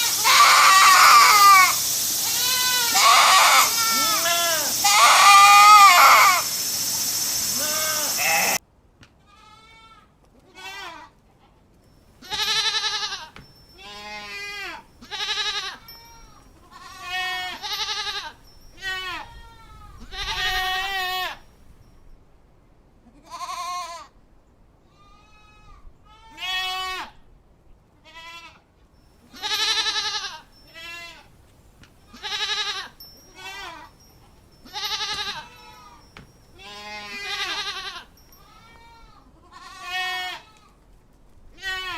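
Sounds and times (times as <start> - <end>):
goats bleating: 0.0 - 6.7, 7.4 - 8.6, 9.3 - 11.1, 12.2 - 21.4, 29.3 - 31.3, 32.1 - 34.0, 34.6 - 40.8, 41.6 - 41.9.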